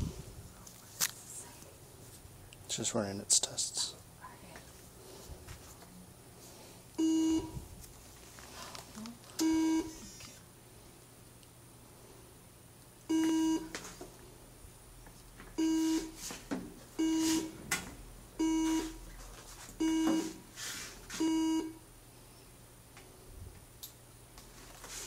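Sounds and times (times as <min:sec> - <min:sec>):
buzzy beeps: 0:07.0 - 0:07.6, 0:09.4 - 0:10.0.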